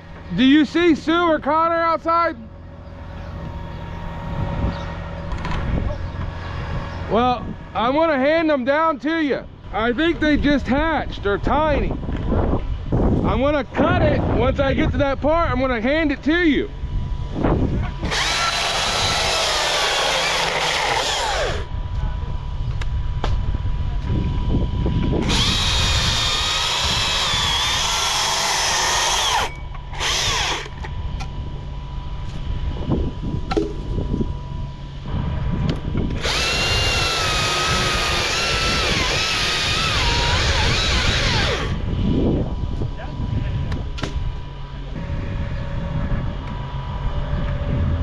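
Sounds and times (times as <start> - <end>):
chainsaw cutting tree trunk: 18.0 - 21.7, 25.2 - 30.8, 36.1 - 41.8.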